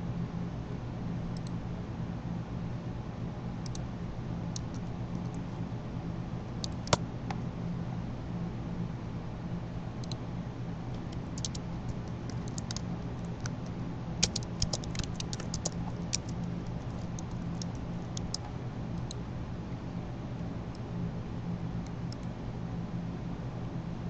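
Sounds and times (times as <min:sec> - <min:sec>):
low electrical hum: 0:00.0 - 0:24.0
computer keyboard typing: 0:04.5 - 0:05.4, 0:06.6 - 0:07.0, 0:10.0 - 0:10.2, 0:10.9 - 0:19.2.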